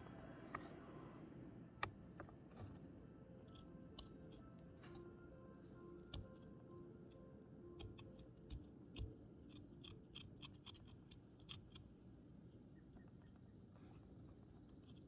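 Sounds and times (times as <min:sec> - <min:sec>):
carving blade cutting wood: 0:03.5 - 0:05.1, 0:06.1 - 0:06.5, 0:07.8 - 0:11.9, 0:14.7 - 0:15.0.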